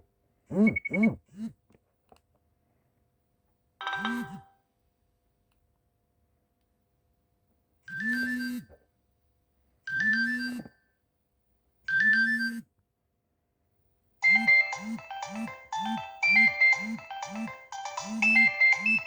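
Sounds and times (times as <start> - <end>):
faster ringtone: 3.8 - 4.5, 14.2 - 19.0
mobile phone ringtone: 3.8 - 4.5, 14.2 - 19.0.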